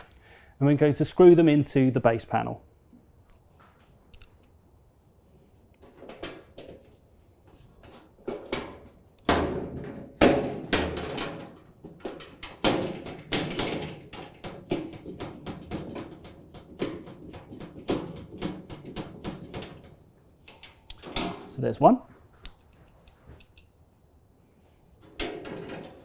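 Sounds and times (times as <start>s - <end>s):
bolts clattering: 5.7s - 23.9s, 24.9s - 26.0s
screwdriver clicking on metal panels: 12.0s - 21.6s.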